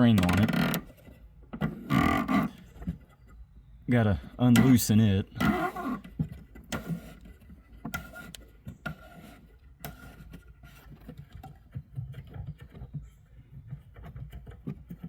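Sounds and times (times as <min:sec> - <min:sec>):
small plastic clicks and rubbing: 0:05.4 - 0:15.0.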